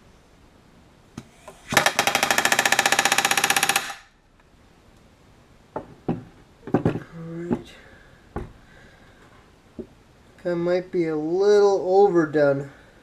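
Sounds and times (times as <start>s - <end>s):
pneumatic rivet gun hammering: 1.2s - 4.1s.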